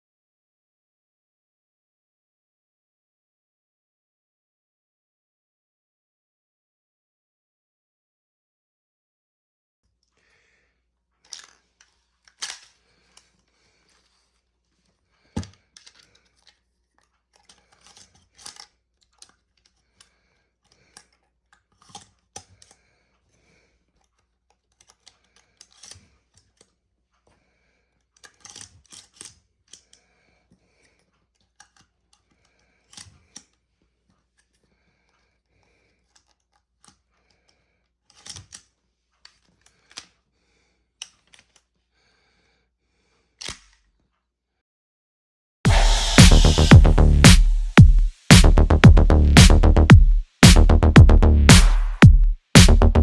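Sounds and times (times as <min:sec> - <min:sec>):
toy shotgun clicks and knocks: 0:11.3 - 0:12.8, 0:15.4 - 0:20.1, 0:24.0 - 0:26.8, 0:28.2 - 0:30.0, 0:31.4 - 0:33.6, 0:38.1 - 0:40.2, 0:43.4 - 0:43.8.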